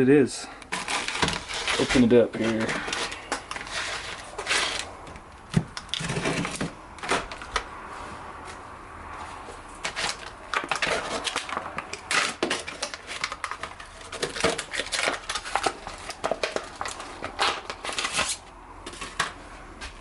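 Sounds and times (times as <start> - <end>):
packaging crinkling and rustling: 0.6 - 7.7, 9.8 - 20.0.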